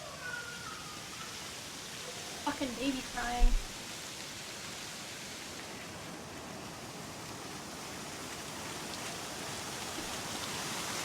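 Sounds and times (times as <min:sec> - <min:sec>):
steady hiss: 0:00.9 - 0:05.6.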